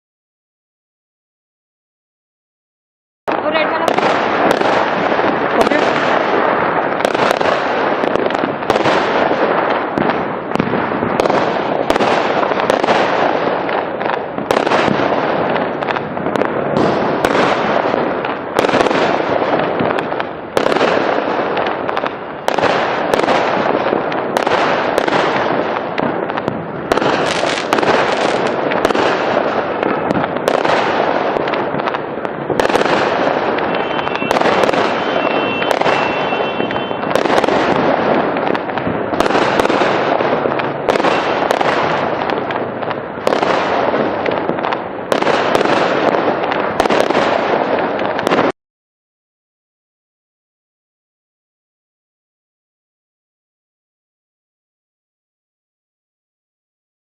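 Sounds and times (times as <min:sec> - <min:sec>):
fireworks crackling and banging: 0:03.3 - 0:48.6.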